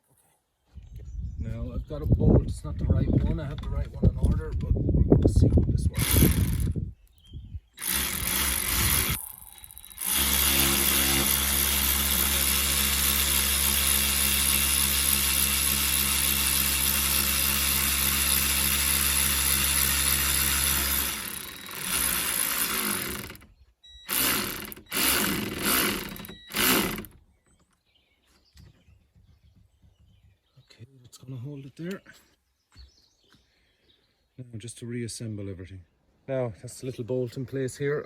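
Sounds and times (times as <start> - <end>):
electric power tool running: 6.0 - 6.7, 7.8 - 23.5, 24.1 - 27.2.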